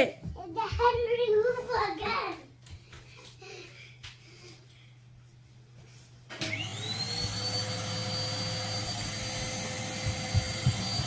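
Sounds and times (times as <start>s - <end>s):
vacuum cleaner motor whine: 6.3s - 11.0s.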